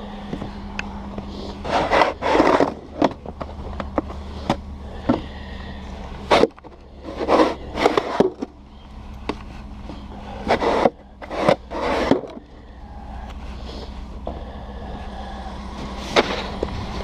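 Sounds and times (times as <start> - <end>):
snow shovel scraping snow: 1.3 - 3.1, 6.3 - 8.4, 10.3 - 12.3, 16.0 - 17.0.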